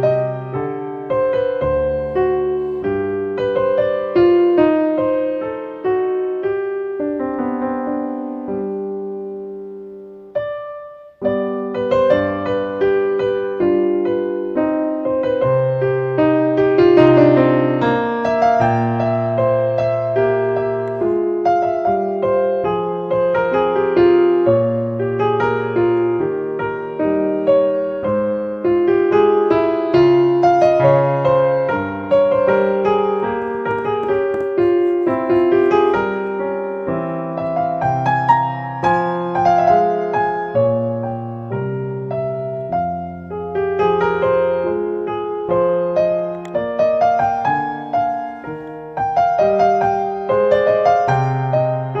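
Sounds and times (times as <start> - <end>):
piano music: 0.0 - 52.0.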